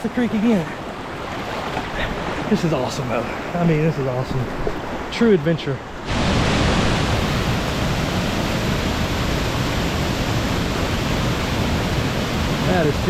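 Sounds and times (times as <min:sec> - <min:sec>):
waterfall rushing: 0:04.9 - 0:13.0.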